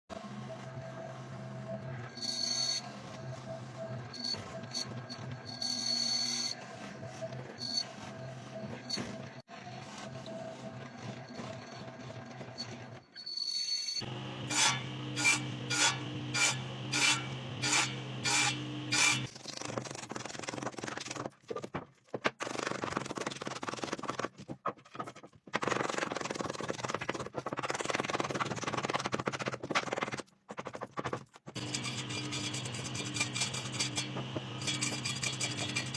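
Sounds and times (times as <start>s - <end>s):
scraping strokes: 30.6s - 35.9s.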